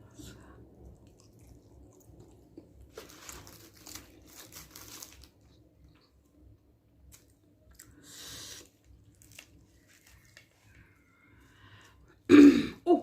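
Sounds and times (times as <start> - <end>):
faint chewing and mouth clicks: 0.1 - 3.0, 7.0 - 10.8.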